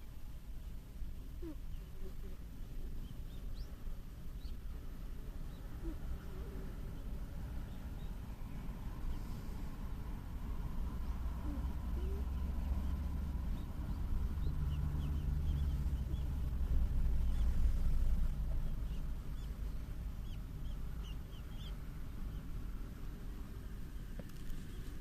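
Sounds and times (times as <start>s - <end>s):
cat breathy sleep rumble: 1.1s - 3.6s, 4.8s - 21.4s.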